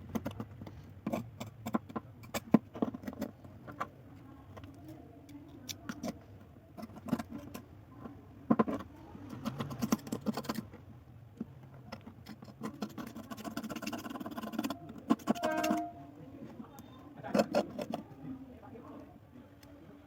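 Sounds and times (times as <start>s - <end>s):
metal key clicking and scraping: 8.6s - 10.7s, 11.9s - 16.0s.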